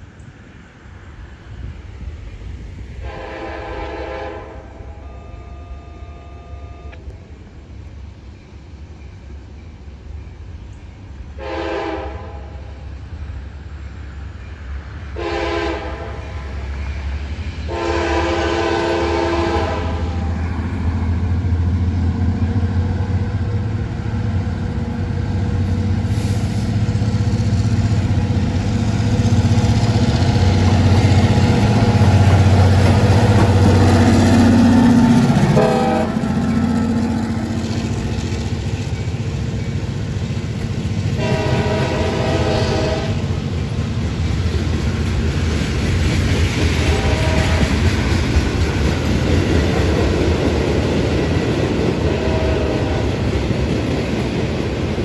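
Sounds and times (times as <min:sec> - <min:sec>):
locomotive engine rumble: 0:00.0 - 0:55.0
locomotive air horn blasts: 0:03.0 - 0:07.0, 0:11.4 - 0:12.7, 0:15.2 - 0:16.4, 0:17.7 - 0:20.3, 0:33.5 - 0:37.0, 0:41.2 - 0:43.3, 0:46.9 - 0:47.9, 0:52.1 - 0:53.1.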